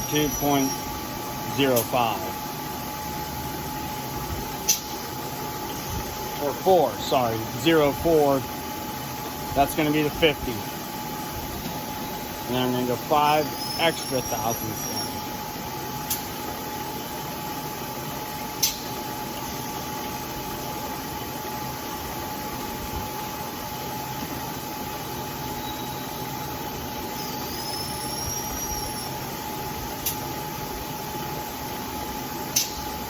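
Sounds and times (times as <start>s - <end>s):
milling machine humming: 0.0s - 33.0s
sharp click: 4.7s - 4.9s, 18.6s - 18.8s, 32.5s - 32.8s.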